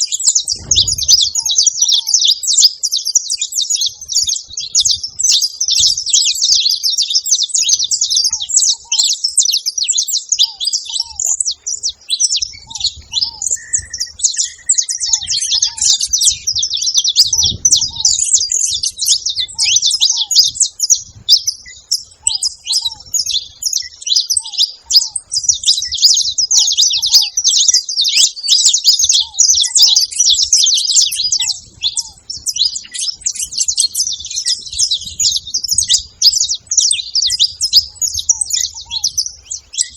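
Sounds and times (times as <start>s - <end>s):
finches chirping and chattering: 0.0s - 39.9s
low short bird call: 12.6s - 18.8s.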